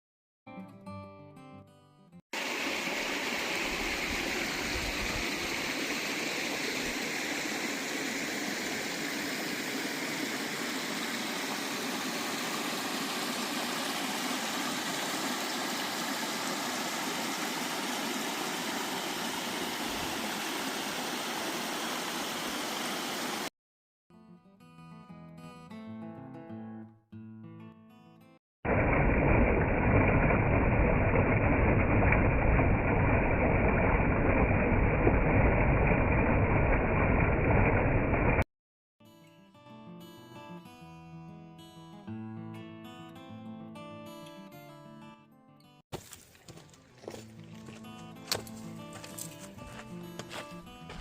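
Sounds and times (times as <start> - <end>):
waterfall rushing: 2.4 - 23.5.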